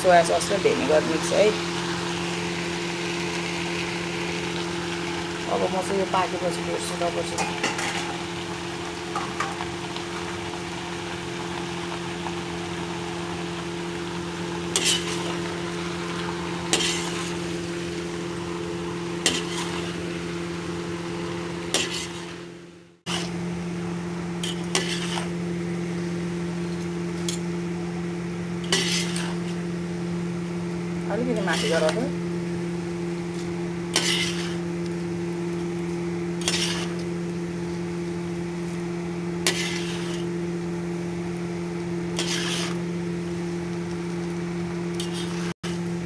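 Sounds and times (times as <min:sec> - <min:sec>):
noodles stir-frying in a pan: 0:00.0 - 0:46.0
metal utensil clinking on pan: 0:07.3 - 0:08.1.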